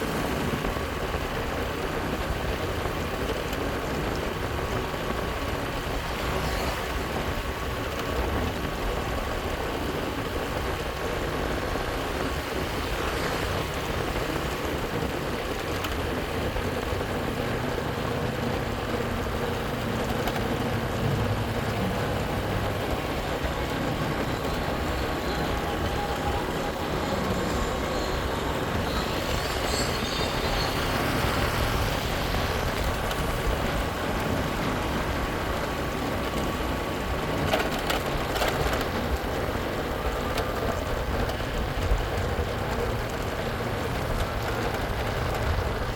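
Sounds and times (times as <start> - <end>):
motorcycle engine rumble: 0.0 - 45.9
road noise: 0.0 - 45.9.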